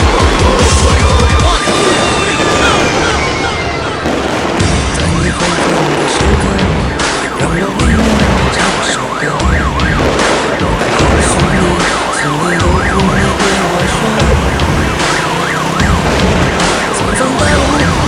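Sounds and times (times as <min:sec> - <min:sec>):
electronic siren wail: 0:00.0 - 0:18.0
firecrackers cracking: 0:00.0 - 0:18.0
heavy low rumble: 0:03.9 - 0:18.0.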